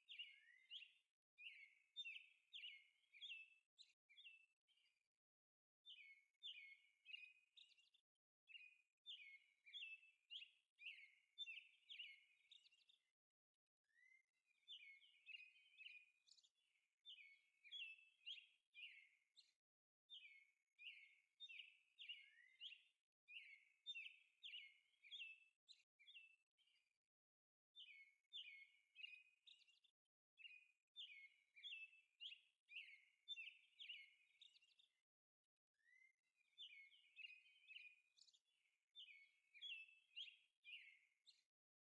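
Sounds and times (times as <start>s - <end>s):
faint birdsong chirps: 0.0s - 27.1s, 27.7s - 41.6s.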